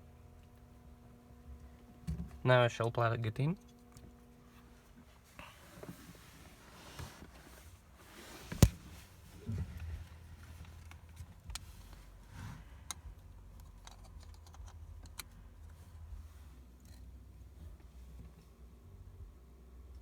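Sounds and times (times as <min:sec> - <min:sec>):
low steady hum: 0:00.0 - 0:20.0
handling noises and faint clicks: 0:03.6 - 0:18.6.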